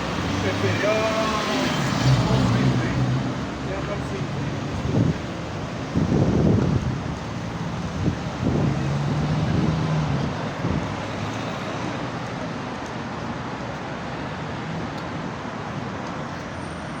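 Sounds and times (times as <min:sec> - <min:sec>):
road traffic: 0:00.0 - 0:17.0.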